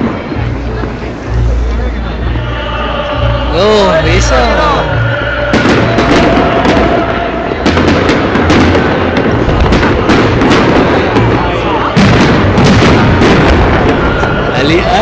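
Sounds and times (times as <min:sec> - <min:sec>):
fireworks crackling and banging: 0:00.0 - 0:01.8, 0:03.6 - 0:15.0.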